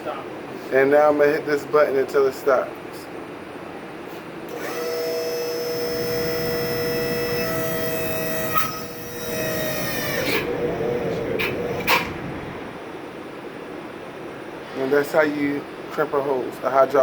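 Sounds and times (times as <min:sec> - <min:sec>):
crimping machine motor whine: 0:04.5 - 0:12.9.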